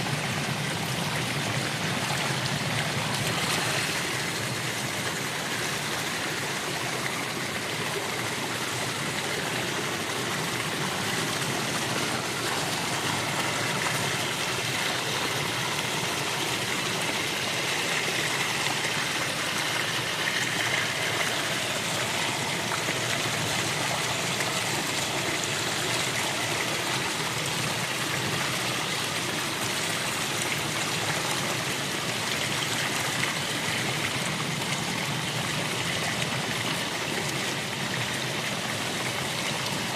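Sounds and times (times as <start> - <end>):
stream trickling over stones: 0.0 - 39.9.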